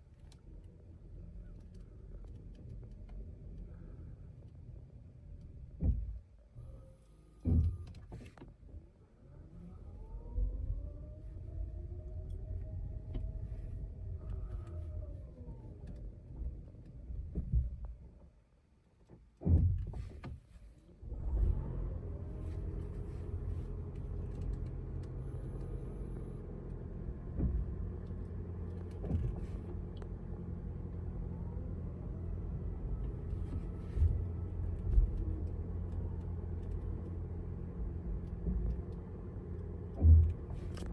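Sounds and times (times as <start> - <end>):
car rolling rumble: 7.4 - 40.9.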